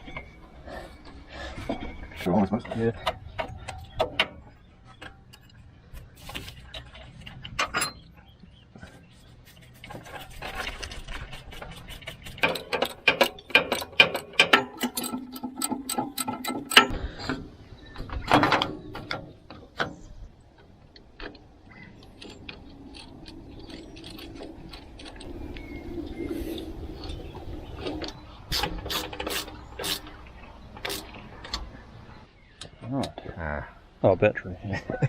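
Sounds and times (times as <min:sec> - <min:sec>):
metal tools clinking: 0:12.4 - 0:16.9.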